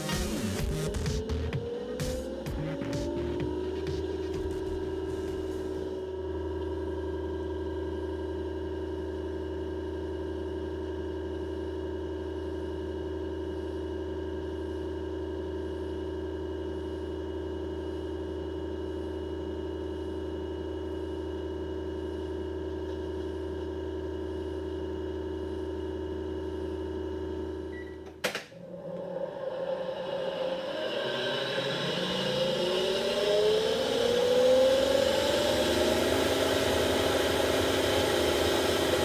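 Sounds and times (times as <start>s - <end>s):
rough whirring spinning up: 1.0s - 6.2s, 28.6s - 39.0s
washer-dryer humming: 27.0s - 39.0s.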